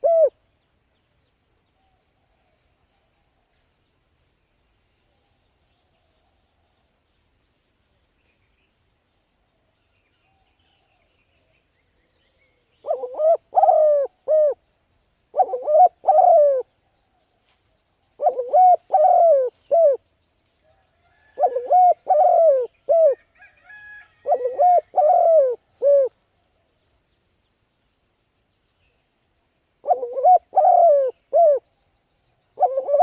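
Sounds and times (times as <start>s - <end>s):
dove cooing: 0.0s - 0.4s, 12.8s - 14.6s, 15.3s - 16.7s, 18.2s - 20.0s, 21.2s - 26.2s, 29.8s - 31.7s, 32.6s - 33.0s.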